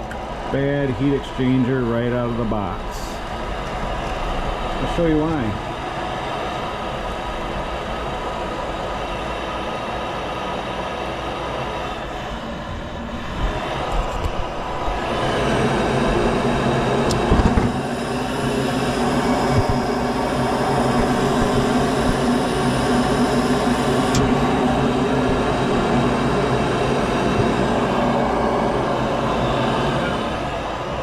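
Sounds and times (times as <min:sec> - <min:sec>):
gas furnace motor drone: 0:00.0 - 0:31.0
rushing air: 0:11.6 - 0:31.0.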